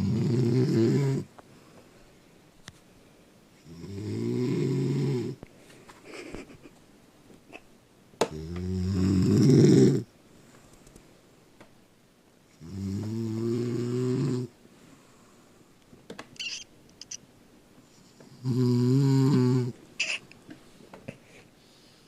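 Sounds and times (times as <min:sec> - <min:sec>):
woman snoring loudly: 0:00.0 - 0:01.3, 0:03.7 - 0:05.4, 0:08.4 - 0:10.0, 0:12.6 - 0:14.5, 0:18.4 - 0:19.7.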